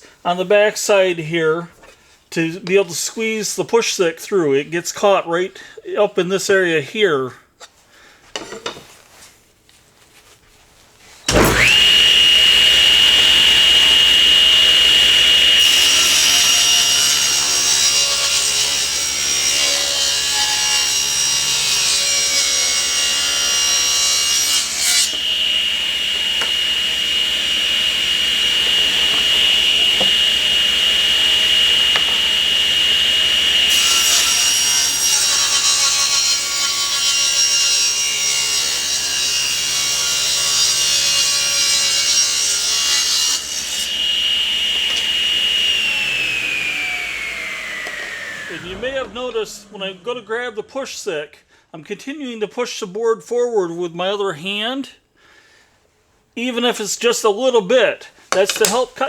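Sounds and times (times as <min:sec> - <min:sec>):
table saw blade whining: 0:11.3 - 0:50.5, 0:58.3 - 0:59.0
saw cutting wooden board: 0:11.3 - 0:50.6, 0:58.3 - 0:59.0.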